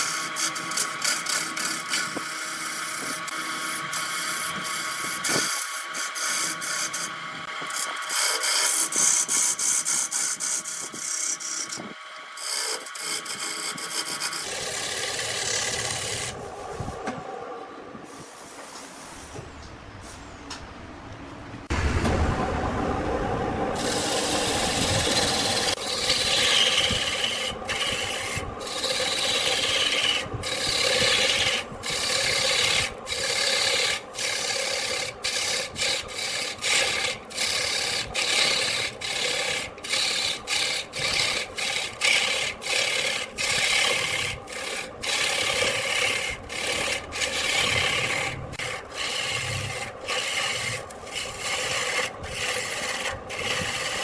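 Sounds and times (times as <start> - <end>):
turning tool scraping wood: 0.0 - 17.2, 23.8 - 54.0
wood lathe running: 0.0 - 17.2, 23.8 - 54.0.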